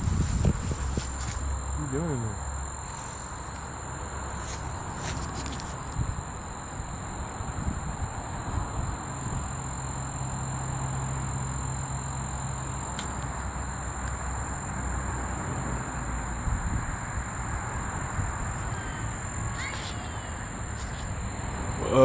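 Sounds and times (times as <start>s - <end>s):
wind on microphone: 0.0s - 1.4s, 5.2s - 9.6s, 16.4s - 22.0s
insects droning: 0.0s - 22.0s.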